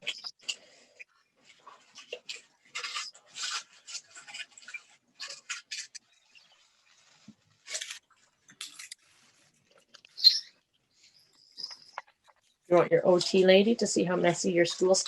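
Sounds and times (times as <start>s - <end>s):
paper rustling and rubbing: 2.7s - 10.1s.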